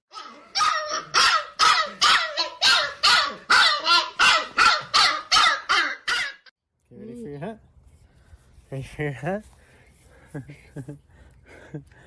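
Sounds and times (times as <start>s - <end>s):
dog barking: 0.1s - 6.5s.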